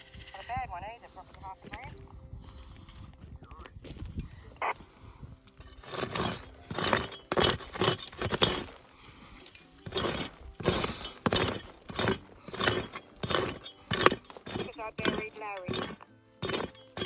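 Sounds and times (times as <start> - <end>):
pick striking gravelly ground: 5.5 - 17.0.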